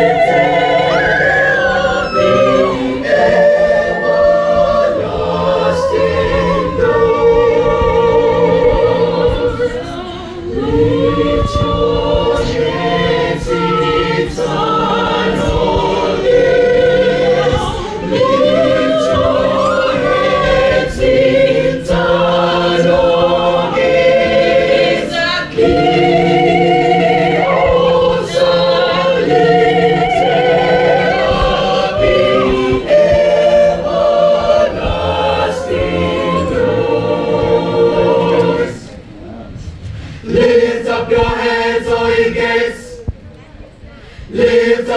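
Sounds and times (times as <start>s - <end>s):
gospel choir singing: 0.0s - 43.3s, 44.0s - 44.9s.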